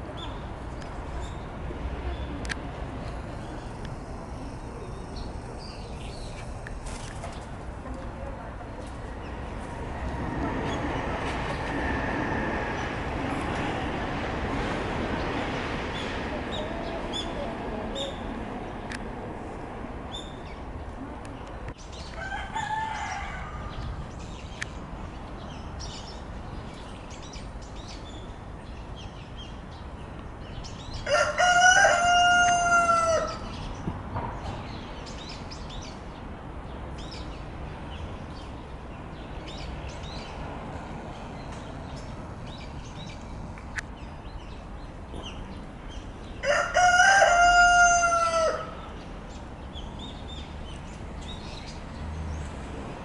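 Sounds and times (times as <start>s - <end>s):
rooster crowing: 22.2s - 23.8s, 31.0s - 33.4s, 46.4s - 48.9s.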